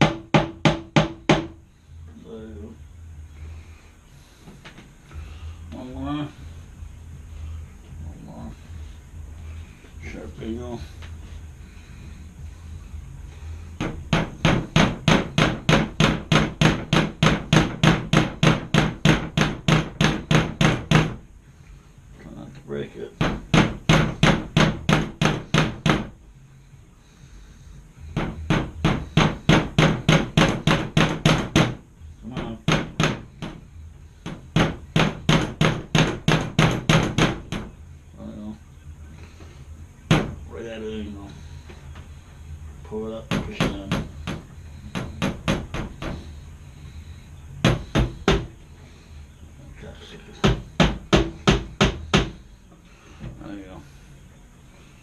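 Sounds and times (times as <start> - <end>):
hammer striking wood: 0.0 - 1.6, 13.8 - 21.2, 23.2 - 26.1, 28.2 - 31.8, 32.4 - 33.6, 34.2 - 37.7, 40.1 - 40.4, 43.3 - 46.3, 47.6 - 48.5, 50.4 - 52.4.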